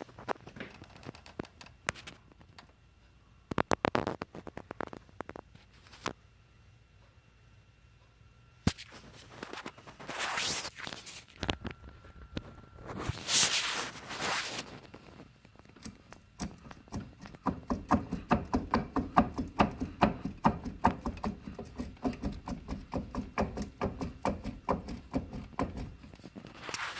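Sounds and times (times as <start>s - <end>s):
rapid knocking clunks: 16.4s - 26.1s.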